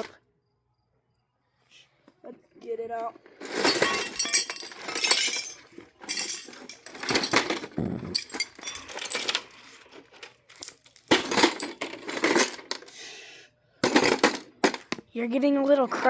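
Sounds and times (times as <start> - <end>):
broken glass shards clinking: 3.4 - 9.6, 10.5 - 12.8.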